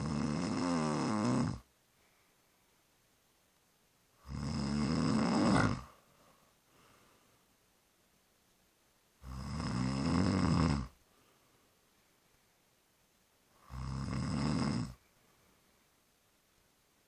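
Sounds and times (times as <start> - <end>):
person snoring: 0.0 - 1.6, 4.2 - 6.0, 9.2 - 11.0, 13.6 - 15.0.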